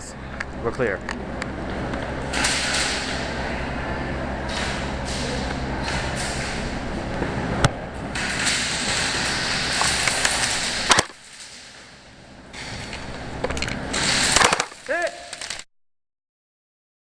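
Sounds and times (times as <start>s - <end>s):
loud rushing noise: 1.2s - 14.7s
sharp cracks: 2.3s - 3.3s, 8.1s - 15.7s
short voiced sound: 14.8s - 15.5s.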